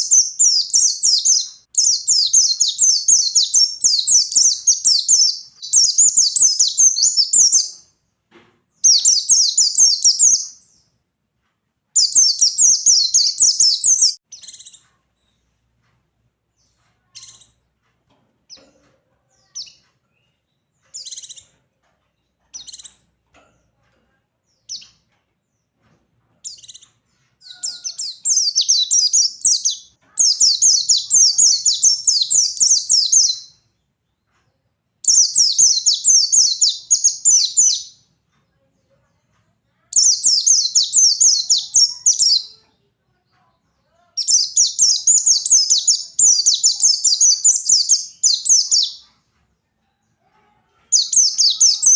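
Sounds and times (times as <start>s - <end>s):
bird chirping and twittering: 0.0s - 8.0s, 8.8s - 11.0s, 12.0s - 15.5s, 16.5s - 17.6s, 18.5s - 21.6s, 22.2s - 23.1s, 24.4s - 25.7s, 26.4s - 34.3s, 35.0s - 38.1s, 39.9s - 42.7s, 44.0s - 49.2s, 50.9s - 51.9s.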